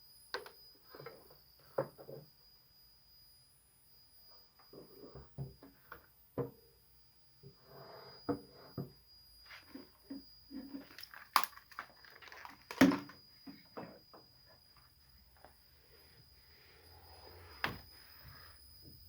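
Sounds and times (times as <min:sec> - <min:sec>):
faint high-pitched whine: 0:00.0 - 0:19.0
crackles clicks and pops: 0:10.8 - 0:13.2.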